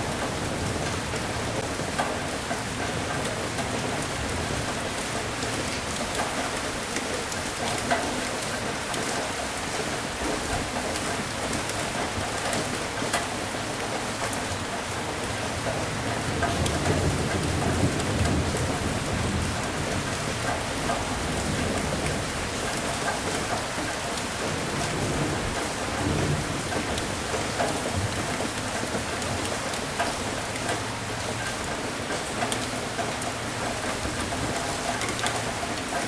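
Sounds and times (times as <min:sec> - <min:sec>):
heavy rain pattering: 0:00.0 - 0:36.0
rolling thunder rumble: 0:16.4 - 0:23.6, 0:24.4 - 0:29.6.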